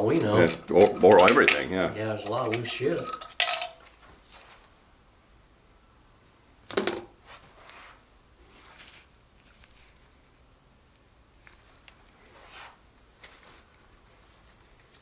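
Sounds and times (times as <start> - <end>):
metal tools clinking and knocking: 0.0 - 3.9.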